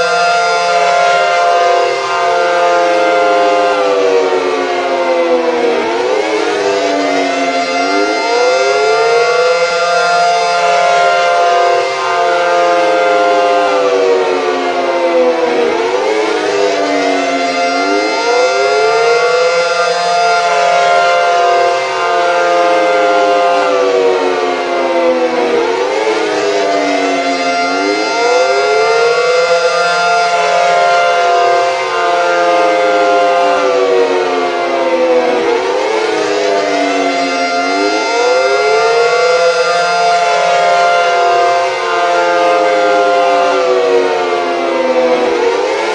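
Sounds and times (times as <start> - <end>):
civil defense siren wailing: 0.0 - 45.9.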